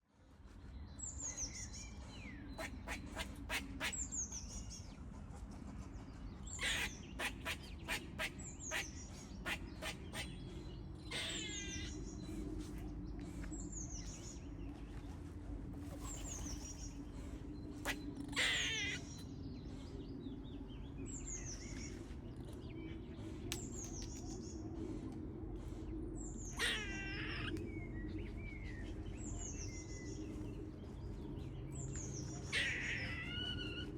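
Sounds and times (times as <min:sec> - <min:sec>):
low steady hum: 0:00.1 - 0:26.6.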